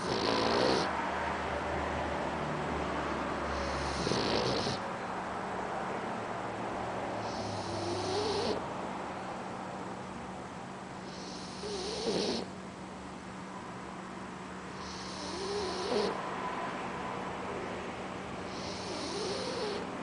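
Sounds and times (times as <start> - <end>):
puppy snoring: 0.0 - 1.0, 3.4 - 4.8, 7.2 - 8.6, 11.0 - 12.6, 14.7 - 16.2, 18.5 - 19.9.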